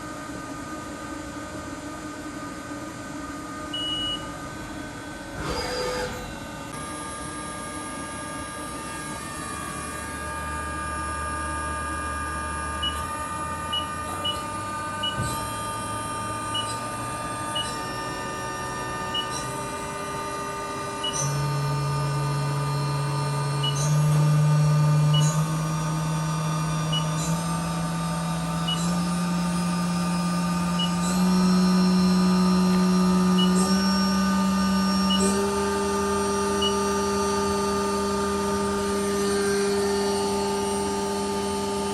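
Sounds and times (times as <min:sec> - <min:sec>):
machine spindle whine: 0:02.3 - 0:41.9.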